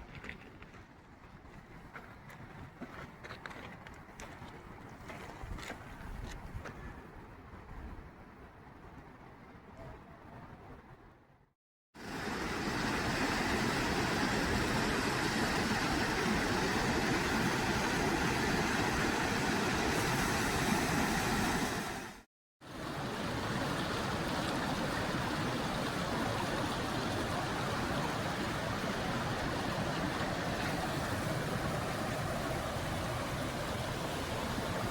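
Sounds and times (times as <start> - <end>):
waterfall roaring: 12.0 - 22.2, 22.8 - 34.9.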